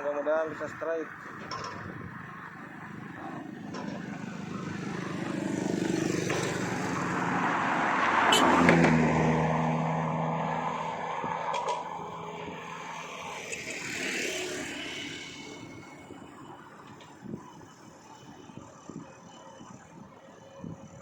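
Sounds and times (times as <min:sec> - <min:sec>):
motor engine passing: 0:01.2 - 0:16.2.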